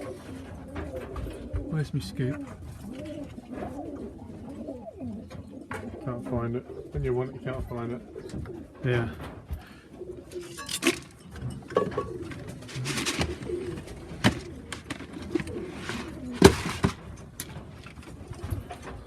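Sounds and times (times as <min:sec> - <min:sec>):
pigeons cooing: 0:00.0 - 0:19.0
sharp knocks and clatters: 0:05.3 - 0:19.0.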